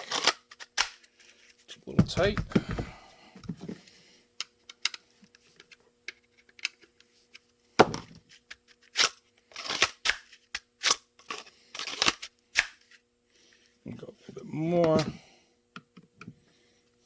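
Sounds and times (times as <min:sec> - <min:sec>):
pistol clicking in plastic holster: 0:00.2 - 0:01.1.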